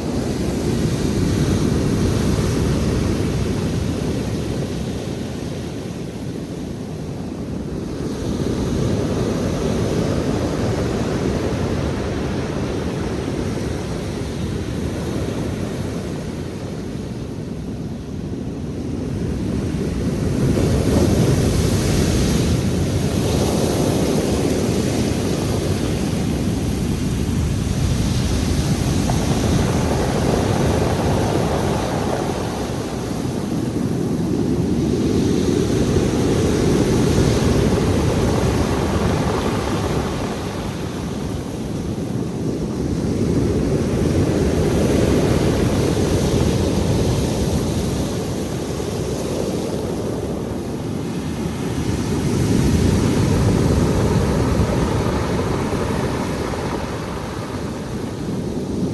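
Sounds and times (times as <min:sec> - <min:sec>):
waves breaking on shore: 0:19.7 - 0:58.9.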